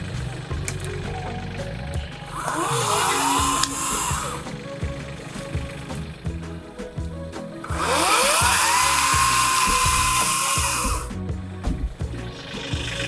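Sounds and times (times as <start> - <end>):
background music with beat: 0.0 - 13.0
power tool motor whining: 2.0 - 6.4, 7.7 - 11.1.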